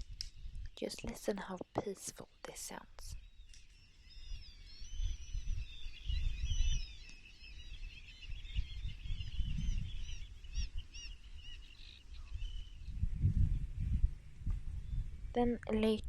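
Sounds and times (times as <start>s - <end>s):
songbirds chirping and singing: 0.0s - 16.0s
low rumble: 12.3s - 16.0s.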